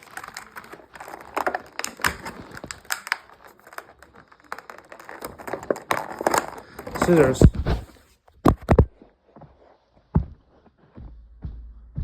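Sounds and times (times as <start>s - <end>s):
toy packaging being opened: 0.0s - 8.8s.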